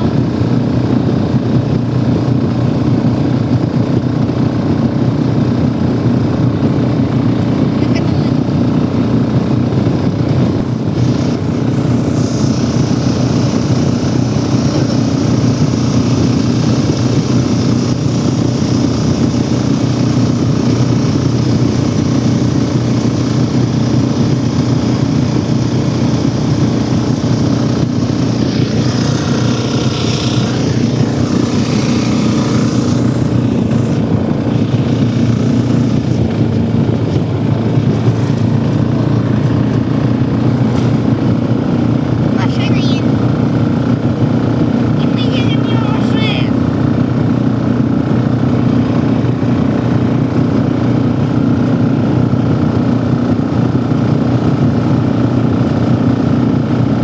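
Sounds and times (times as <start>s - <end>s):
tractor engine droning: 0.0s - 57.0s
hissing noise: 10.9s - 21.2s, 27.0s - 36.4s.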